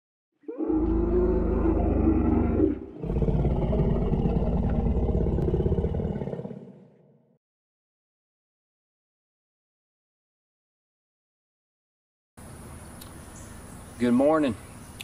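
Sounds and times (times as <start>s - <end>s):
deep dinosaur roar: 0.4s - 7.4s.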